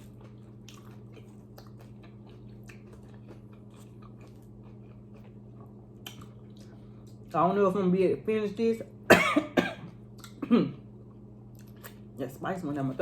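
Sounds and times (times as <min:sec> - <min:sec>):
person chewing crunchy food: 0:00.0 - 0:07.4, 0:10.0 - 0:10.4, 0:11.0 - 0:12.2
low electrical hum: 0:00.0 - 0:13.0.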